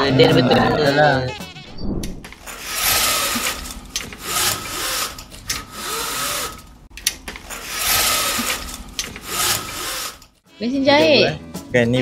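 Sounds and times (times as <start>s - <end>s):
window blind rasping: 2.4s - 6.7s, 7.4s - 10.4s.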